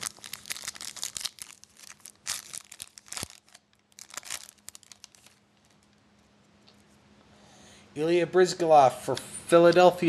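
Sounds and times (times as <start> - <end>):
foil wrapper crinkling: 0.0 - 6.0.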